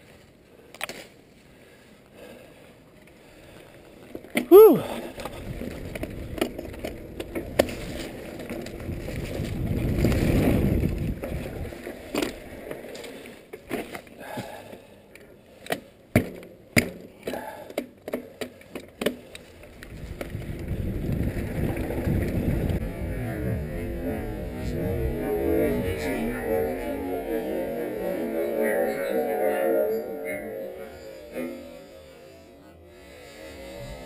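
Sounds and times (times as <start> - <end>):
wind rushing over microphone: 8.7 - 11.8, 19.7 - 28.8
bike clacking and rattling: 16.1 - 30.1.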